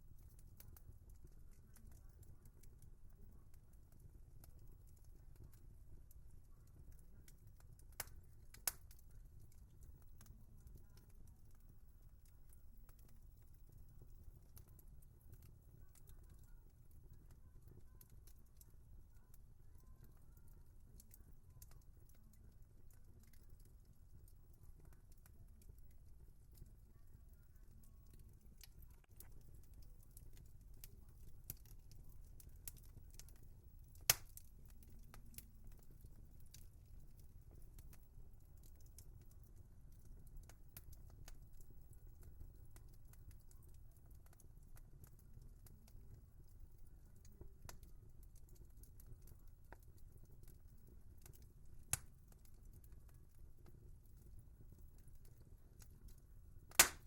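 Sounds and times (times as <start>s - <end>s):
wood fire crackling: 0.0s - 57.0s
sharp pop from fire: 34.1s - 34.4s, 56.7s - 57.0s.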